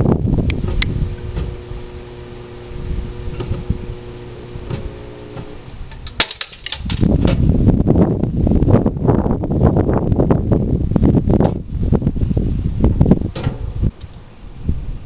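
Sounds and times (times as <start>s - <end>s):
microwave oven humming: 0.0s - 5.8s
wind noise on microphone: 0.0s - 15.0s.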